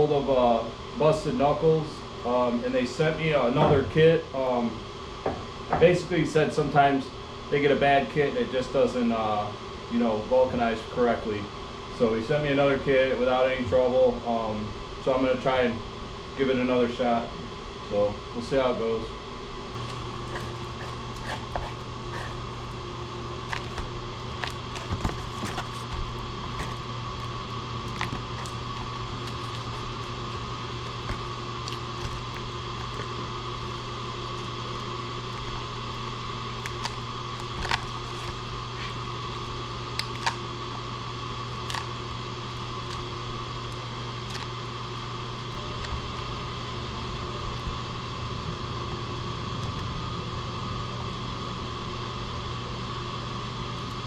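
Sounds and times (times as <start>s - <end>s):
steady mechanical fan hum: 0.0s - 54.0s.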